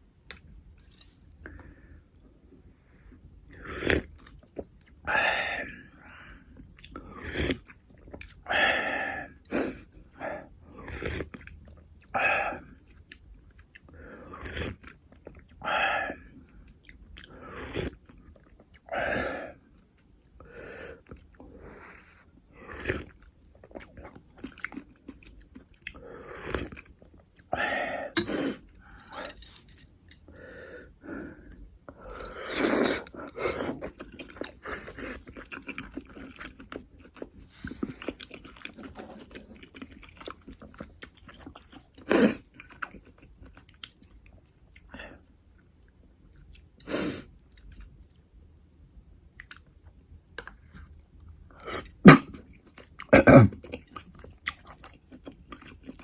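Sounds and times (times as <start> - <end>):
chewing and mouth sounds: 22.9 - 27.5, 31.9 - 46.8, 49.4 - 56.0.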